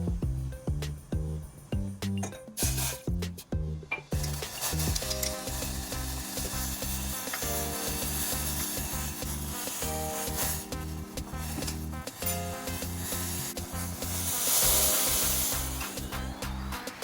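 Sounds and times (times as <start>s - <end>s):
background music: 0.0s - 17.0s
food sizzling in a pan: 4.1s - 17.0s.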